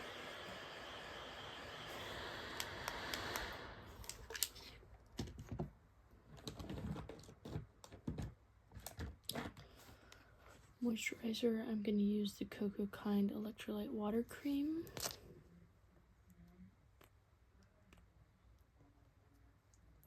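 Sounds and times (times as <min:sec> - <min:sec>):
steady hiss: 0:00.0 - 0:04.7.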